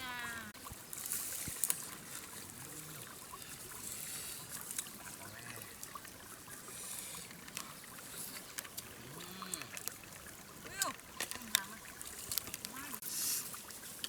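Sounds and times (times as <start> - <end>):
water trickling and splashing: 0.0 - 14.0.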